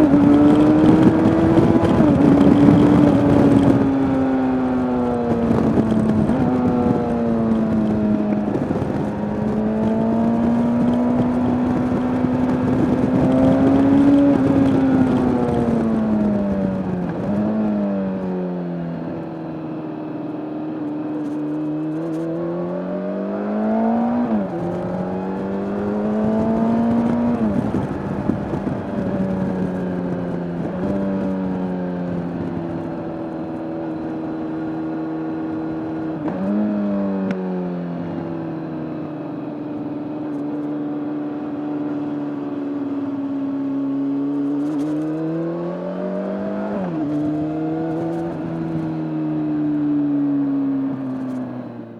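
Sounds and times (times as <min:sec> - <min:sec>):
wind rush: 0:00.0 - 0:18.4, 0:21.1 - 0:37.1
motorcycle engine revving: 0:00.0 - 0:51.9.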